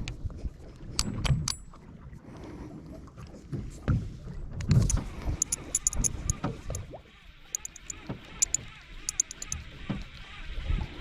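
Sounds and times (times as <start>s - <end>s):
water slapping boat hull: 0.0s - 11.0s
sharp high ticks: 4.9s - 6.4s, 7.5s - 9.6s.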